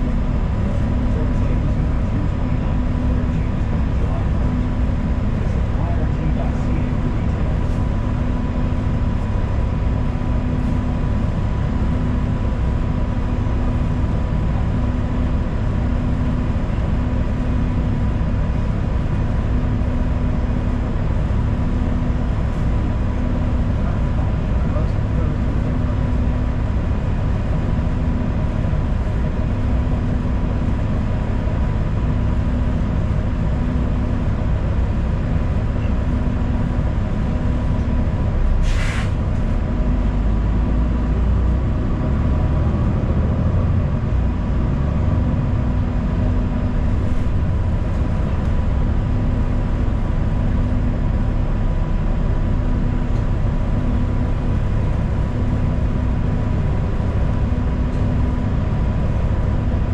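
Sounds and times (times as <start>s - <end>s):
bus engine and road rumble: 0.0s - 59.9s
air brake hiss: 38.6s - 39.2s.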